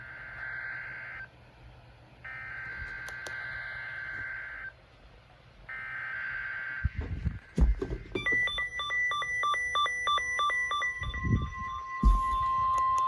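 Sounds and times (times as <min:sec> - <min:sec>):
two-tone digital data warble: 0:08.2 - 0:13.0.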